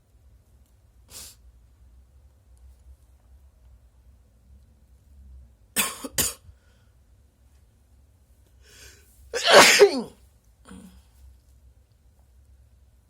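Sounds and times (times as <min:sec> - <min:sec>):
person sneezing: 0:09.4 - 0:10.9.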